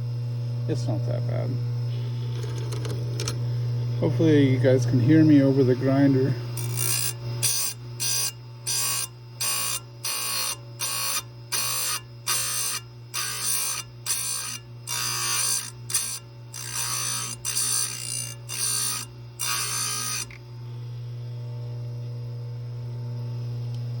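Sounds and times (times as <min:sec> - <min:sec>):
grinder motor humming: 0:00.0 - 0:21.6
grinder wheel grinding saw chain: 0:04.3 - 0:20.4.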